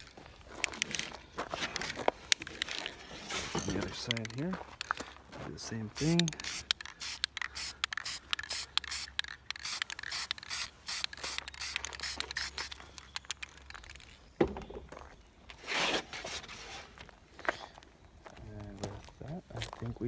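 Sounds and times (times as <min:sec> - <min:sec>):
spray paint can hissing: 0:06.0 - 0:12.8.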